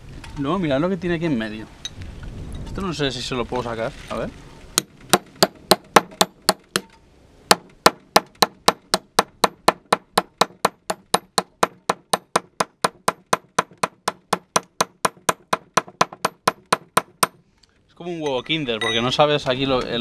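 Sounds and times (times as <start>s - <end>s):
hammer striking chisel on stone: 4.8s - 17.4s.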